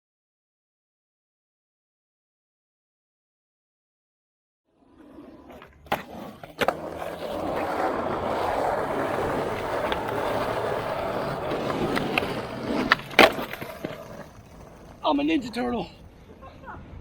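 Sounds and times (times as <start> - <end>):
skateboard wheels rolling: 4.7 - 17.0
skateboard clacks: 5.4 - 15.0.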